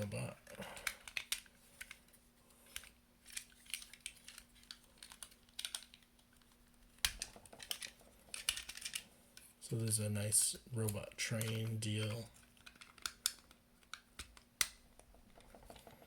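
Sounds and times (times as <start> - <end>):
plastic toy parts clicking: 0.8 - 2.0, 2.7 - 9.0, 10.8 - 14.8.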